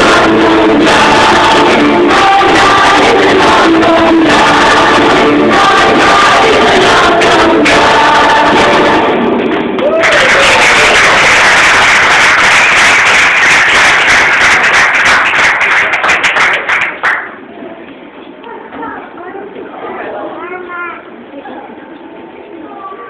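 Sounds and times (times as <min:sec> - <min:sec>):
children's choir singing: 0:00.0 - 0:09.8
applause and cheering: 0:09.7 - 0:17.4.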